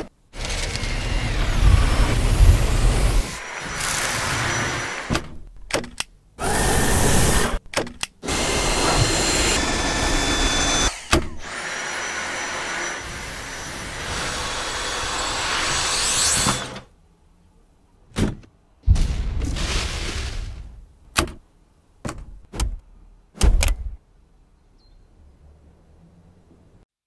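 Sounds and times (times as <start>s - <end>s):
stick vacuum cleaner whine: 8.2s - 15.2s.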